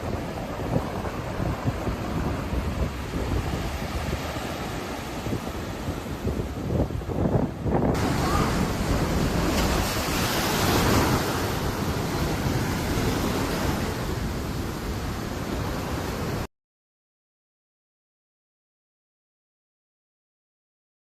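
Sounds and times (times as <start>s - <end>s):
storm surf breaking: 0.0s - 16.5s
wind buffeting microphone: 0.0s - 16.5s.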